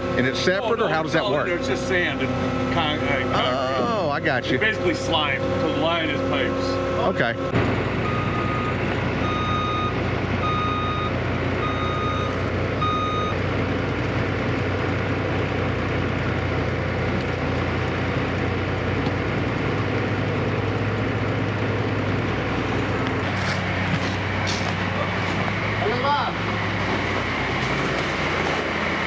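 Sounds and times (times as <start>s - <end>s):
truck reversing alarm beeping: 0.0s - 13.6s, 22.4s - 29.0s
heavy diesel engine drone: 0.0s - 29.0s.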